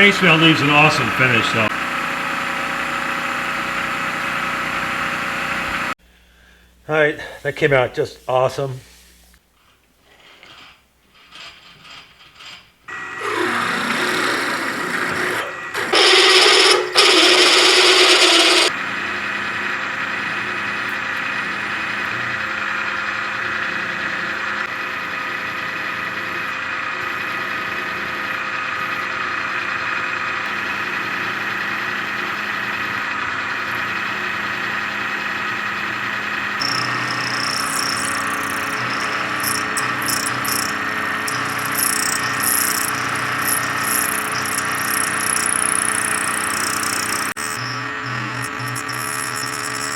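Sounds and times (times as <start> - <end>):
power tool motor hum and whine: 12.9 - 18.7, 36.6 - 49.9.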